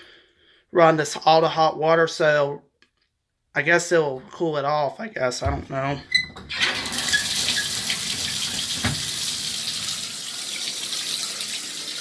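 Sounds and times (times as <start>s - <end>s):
water running from a tap: 6.5s - 12.0s.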